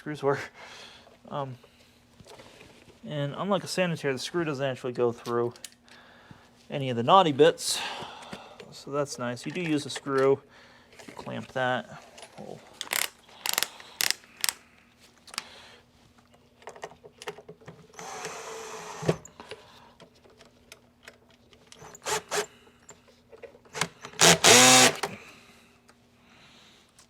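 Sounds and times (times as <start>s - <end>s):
parts and tools clicking: 12.2s - 14.6s, 19.3s - 25.2s
power drill driving screws: 18.0s - 19.2s, 21.8s - 22.5s, 23.8s - 25.2s.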